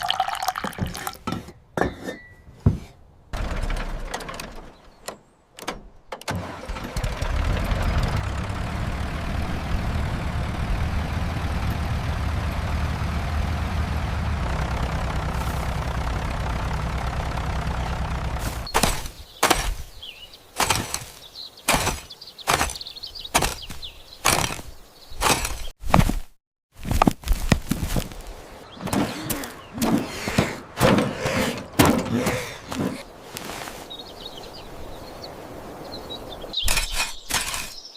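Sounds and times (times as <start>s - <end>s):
sharp clicks and knocks: 3.4s - 6.4s
engine running: 6.3s - 19.0s.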